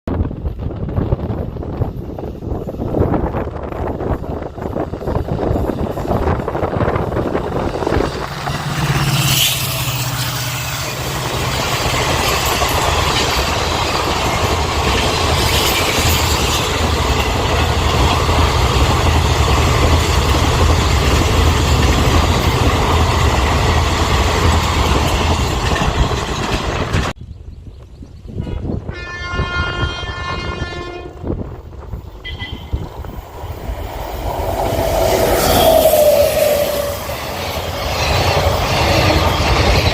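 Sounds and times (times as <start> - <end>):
train wheels rumbling: 0.1 - 27.2, 28.2 - 39.9
train horn chord: 28.4 - 31.4
train horn blast: 28.4 - 31.5, 32.2 - 32.9.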